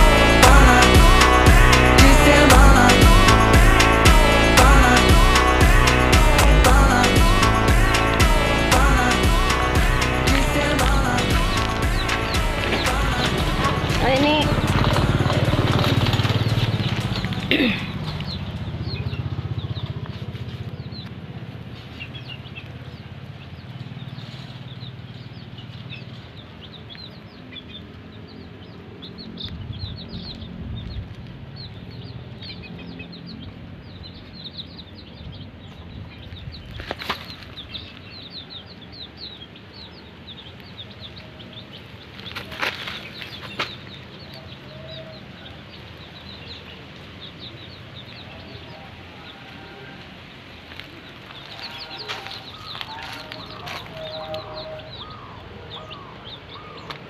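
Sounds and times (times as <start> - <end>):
low hum: 0.0 - 22.0
birds chirping: 0.0 - 57.0.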